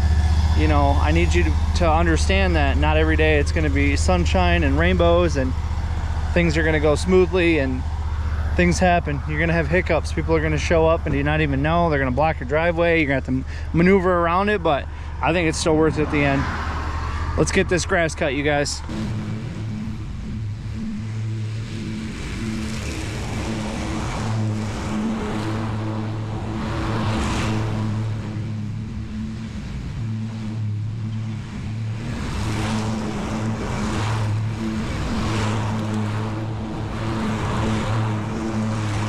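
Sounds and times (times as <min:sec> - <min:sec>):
lawn mower engine cutting grass: 0:00.0 - 0:39.0.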